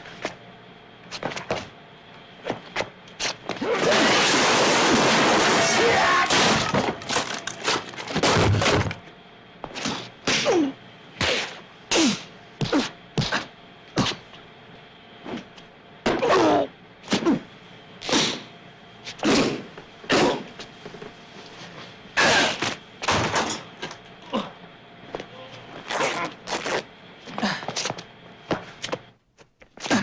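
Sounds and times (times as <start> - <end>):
thuds whacks and knocks: 11.2 - 14.2.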